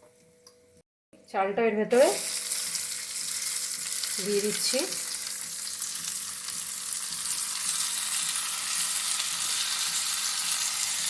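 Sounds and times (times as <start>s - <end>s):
rice sizzling in hot fat: 2.0s - 11.0s.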